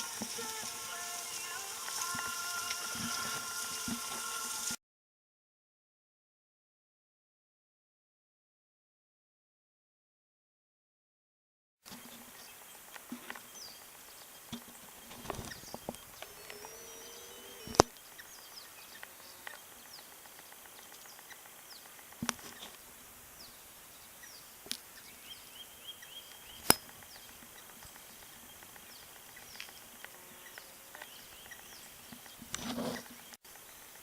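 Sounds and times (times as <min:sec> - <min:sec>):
small birds chirping: 0:00.0 - 0:04.7, 0:11.9 - 0:34.0
steady background hiss: 0:00.0 - 0:04.8, 0:12.0 - 0:34.0.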